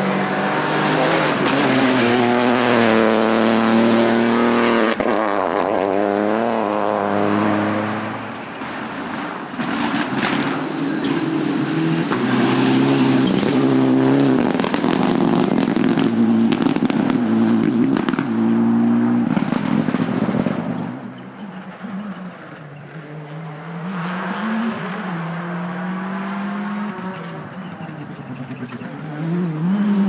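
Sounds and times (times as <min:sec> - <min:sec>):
rally car engine at full throttle: 0:00.0 - 0:30.0
exhaust crackling pops and bangs: 0:07.2 - 0:30.0.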